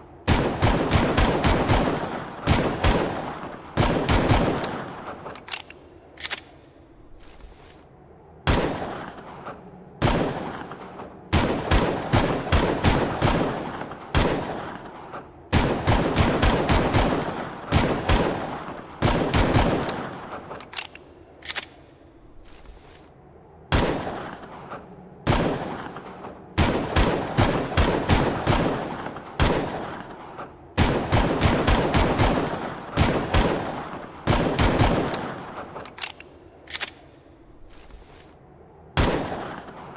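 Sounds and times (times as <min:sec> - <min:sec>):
pistol gunshots with echo: 0:00.3 - 0:05.4, 0:08.4 - 0:20.6, 0:23.7 - 0:36.2.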